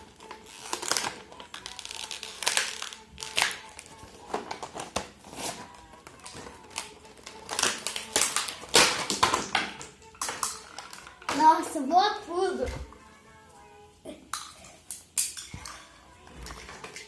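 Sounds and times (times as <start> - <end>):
faint background music: 0.0 - 17.0
plastic packaging crinkling: 0.3 - 9.4.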